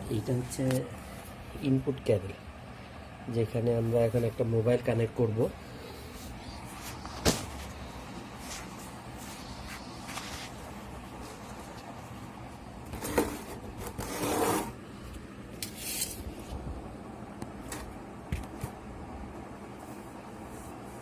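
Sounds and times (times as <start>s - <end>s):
low steady hum: 0.0s - 21.0s
rubbing scrape: 13.0s - 14.8s.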